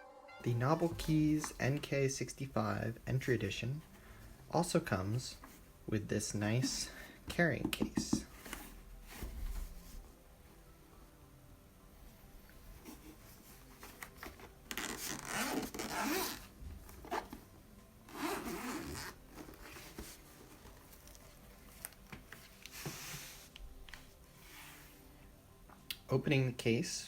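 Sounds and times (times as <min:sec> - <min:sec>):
zipper being pulled open: 0:14.7 - 0:17.4, 0:18.1 - 0:19.8.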